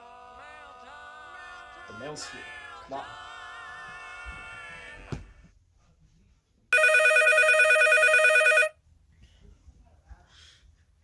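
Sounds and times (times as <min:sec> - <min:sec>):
telephone ringing electronic trill: 0:06.8 - 0:08.7.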